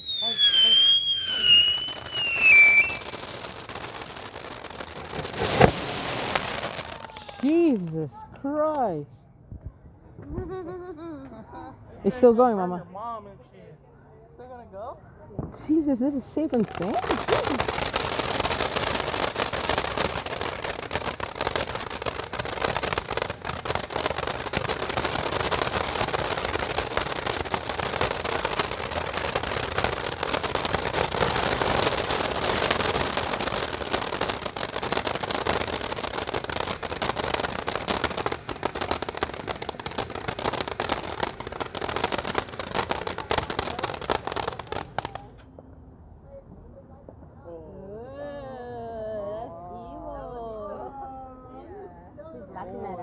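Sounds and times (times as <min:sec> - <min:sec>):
firework hiss: 0:00.0 - 0:07.7, 0:16.5 - 0:45.4
firework crackling and popping: 0:00.0 - 0:08.4, 0:16.5 - 0:45.6.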